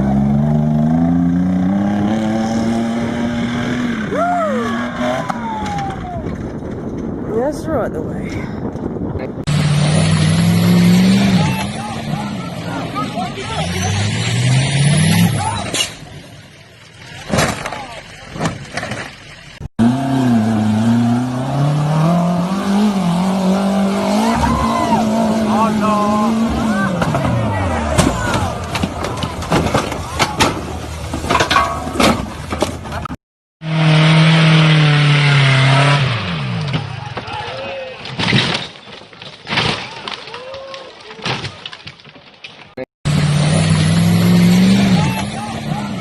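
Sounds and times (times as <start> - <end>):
off-road vehicle engine under load: 0.0 - 7.3, 8.1 - 37.6, 42.7 - 46.0
vehicle engine running hard: 43.1 - 46.0.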